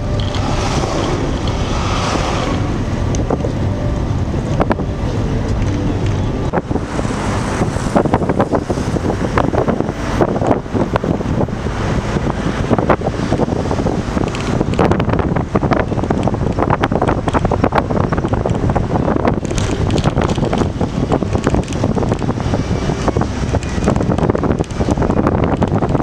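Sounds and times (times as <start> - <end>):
steady rushing noise: 0.0 - 26.0
wind buffeting microphone: 0.0 - 26.0
crackles and knocks: 14.2 - 22.4.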